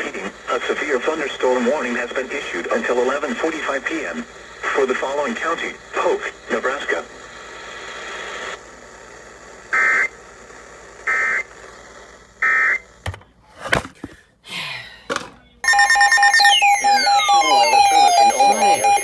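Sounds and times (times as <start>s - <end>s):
buzzy chirping data bursts: 15.6s - 19.0s
steady electronic alert tone: 15.6s - 19.0s
falling electronic sweeps: 15.7s - 19.0s.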